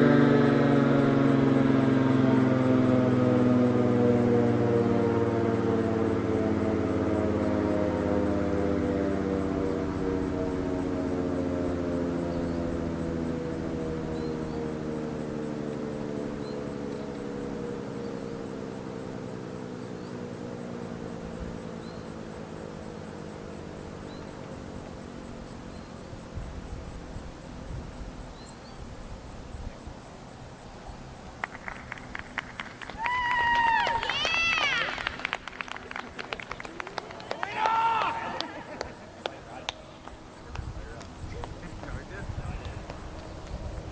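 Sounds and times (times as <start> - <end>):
siren winding down: 0.0 - 24.0
insects chirping: 0.0 - 43.9.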